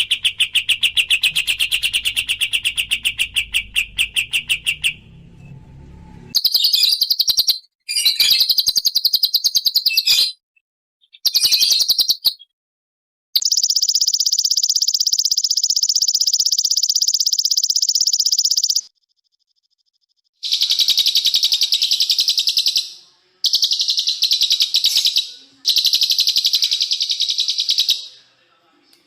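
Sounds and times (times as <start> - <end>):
songbird fast trill: 13.4 - 18.9.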